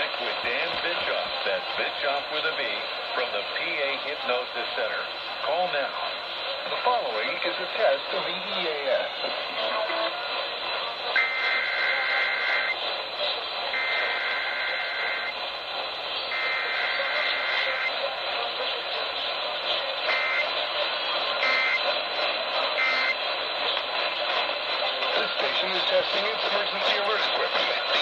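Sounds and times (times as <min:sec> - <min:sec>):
radio hiss: 0:00.0 - 0:28.0
screechy data bursts: 0:11.1 - 0:15.4, 0:16.1 - 0:18.0, 0:20.0 - 0:20.6, 0:21.4 - 0:21.9, 0:22.8 - 0:23.2.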